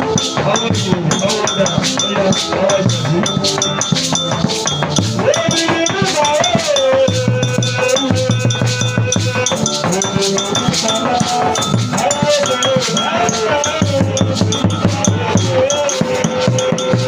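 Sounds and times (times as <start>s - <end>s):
church band music: 0.0s - 17.0s
cowbell and drums beating: 0.0s - 17.0s
gliding melody line: 0.0s - 17.0s.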